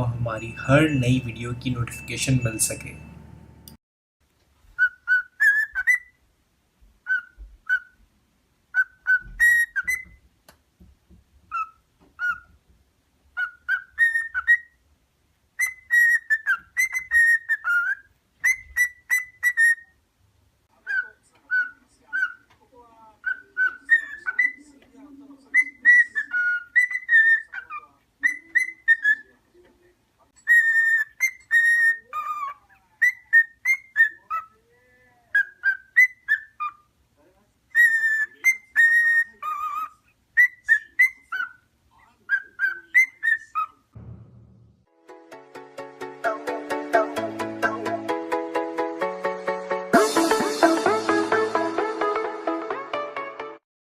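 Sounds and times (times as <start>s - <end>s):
cockatiel whistling: 4.8s - 6.2s, 7.0s - 8.0s, 8.7s - 10.2s, 11.5s - 12.5s, 13.4s - 14.8s, 15.6s - 19.9s, 23.2s - 24.6s, 25.6s - 29.3s, 30.5s - 34.4s, 37.8s - 41.6s.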